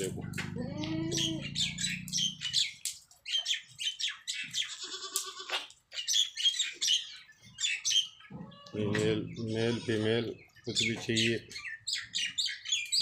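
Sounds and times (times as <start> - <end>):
small birds chirping: 0.0 - 13.0
goat bleating: 0.4 - 1.8, 4.5 - 5.7, 8.2 - 10.4.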